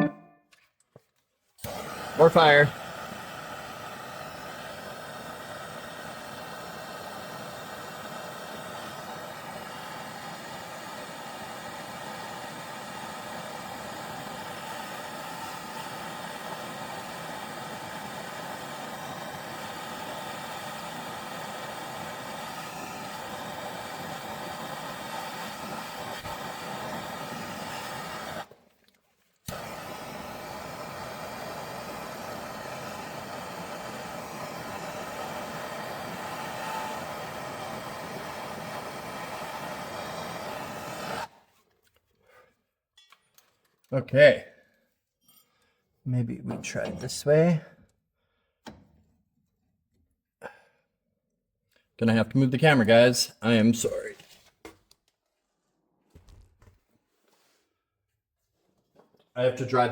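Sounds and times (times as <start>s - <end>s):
blowtorch flame hissing: 1.6s - 28.6s, 29.5s - 41.4s.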